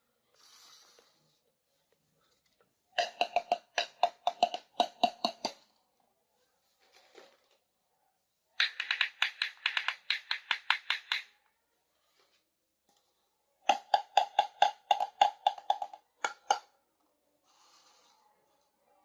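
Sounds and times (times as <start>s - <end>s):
rapid tapping on plastic toys: 3.0s - 5.6s, 8.6s - 11.3s, 13.7s - 16.7s.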